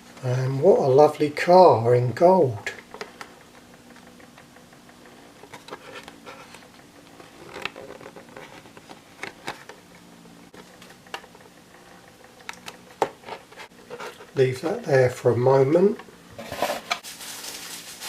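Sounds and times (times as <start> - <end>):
low steady hum: 0.0 - 18.0
light rustling of packaging: 5.0 - 9.9, 15.8 - 18.0.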